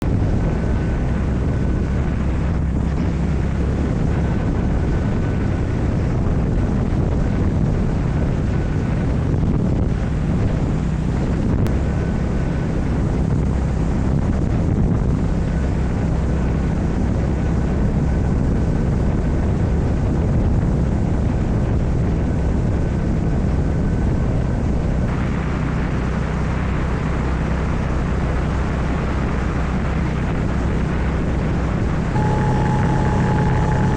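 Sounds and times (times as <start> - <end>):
wind rushing over microphone: 0.0 - 33.9
motorcycle engine running: 25.1 - 33.9.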